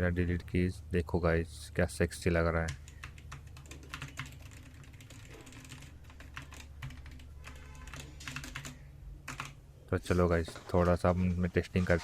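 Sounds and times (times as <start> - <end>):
keyboard keys clicking: 2.6 - 9.6.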